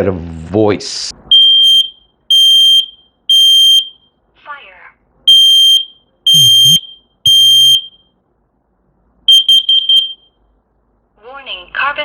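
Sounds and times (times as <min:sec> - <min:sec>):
loud high-pitched alarm beeps: 0:01.3 - 0:04.1, 0:05.3 - 0:08.2, 0:09.3 - 0:10.4
quick short alarm beeps: 0:05.3 - 0:08.2, 0:09.3 - 0:10.4.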